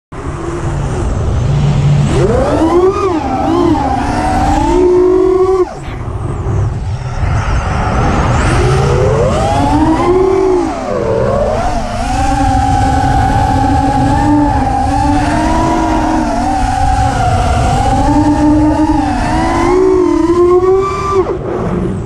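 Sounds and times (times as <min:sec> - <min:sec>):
heavy low rumble: 0:00.1 - 0:20.7
drone motors whining: 0:00.2 - 0:22.0.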